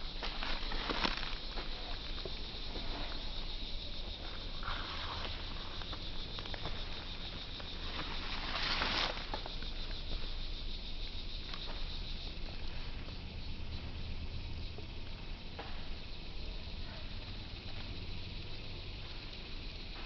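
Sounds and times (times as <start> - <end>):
insects trilling: 0.0 - 20.0
rustling noise: 7.7 - 9.5.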